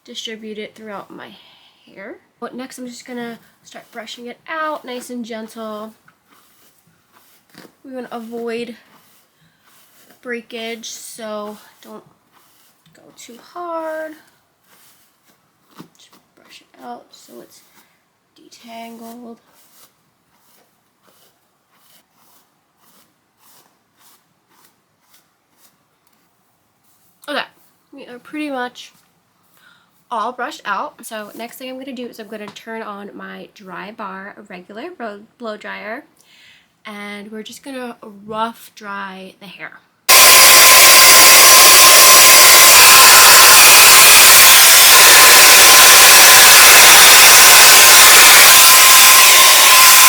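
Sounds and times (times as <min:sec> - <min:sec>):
hairbrush swishing through hair: 0:05.5 - 0:10.9, 0:11.5 - 0:13.0, 0:40.1 - 0:50.0.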